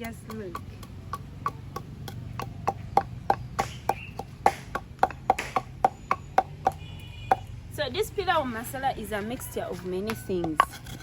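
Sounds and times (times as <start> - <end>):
pestle pounding spices in mortar: 0.0 - 7.5, 10.1 - 11.0.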